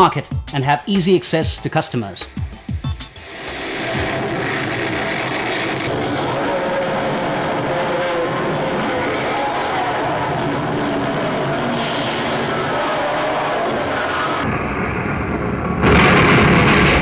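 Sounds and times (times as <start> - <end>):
loud drum-backed music: 0.0 - 4.3
steady din: 0.0 - 9.7
motor engines running: 3.0 - 14.4.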